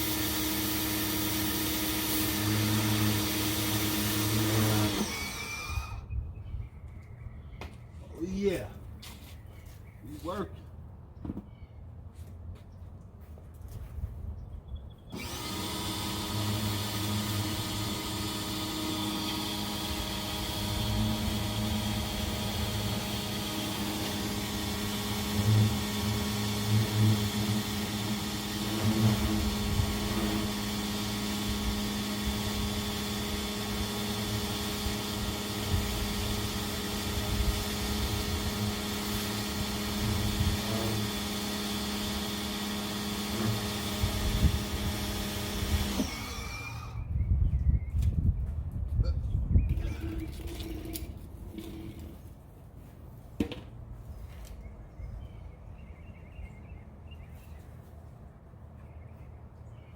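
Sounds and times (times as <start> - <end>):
pressure washer motor hum: 0.0 - 6.1, 15.1 - 47.0, 49.7 - 52.2.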